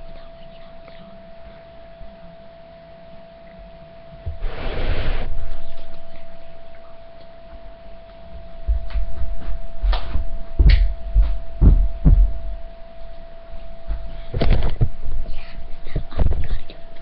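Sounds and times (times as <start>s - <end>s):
steady thin hum: 0.0s - 17.0s
dull low thumps: 8.3s - 12.8s.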